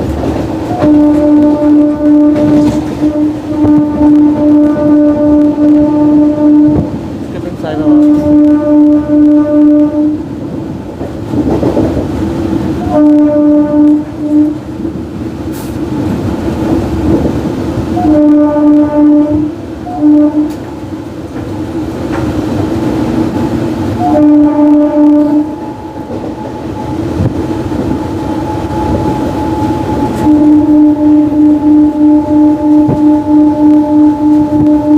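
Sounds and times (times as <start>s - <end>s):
train rumbling and clattering: 0.0s - 34.9s
electric train horn blasts: 0.6s - 10.3s, 12.7s - 14.7s, 17.9s - 20.7s, 23.4s - 34.9s.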